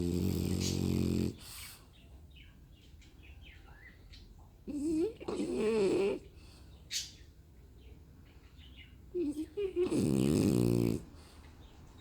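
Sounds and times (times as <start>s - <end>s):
dog snoring: 0.0s - 1.7s, 4.7s - 6.3s, 9.2s - 11.3s.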